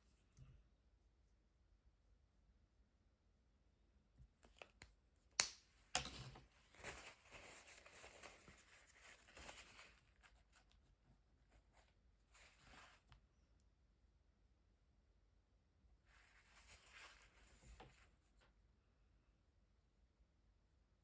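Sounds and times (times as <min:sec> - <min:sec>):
sharp snaps: 0:04.7 - 0:06.2
scratchy rustling: 0:06.6 - 0:10.6.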